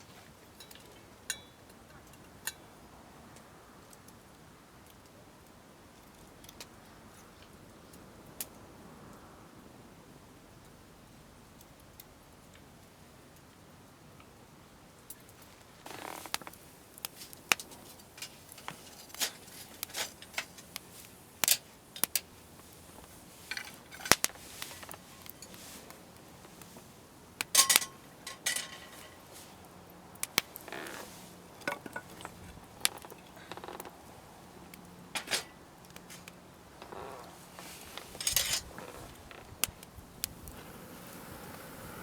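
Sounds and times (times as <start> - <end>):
metal cookware clinking: 27.5 - 29.3, 38.1 - 38.8.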